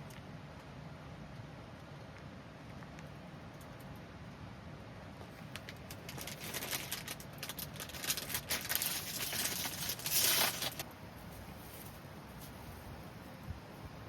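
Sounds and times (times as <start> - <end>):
rustling and crinkling: 5.2 - 13.9.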